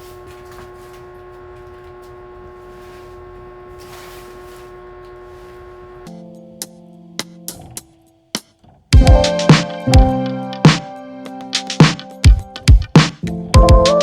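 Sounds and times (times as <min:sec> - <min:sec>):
appliance motor humming: 0:00.0 - 0:06.1.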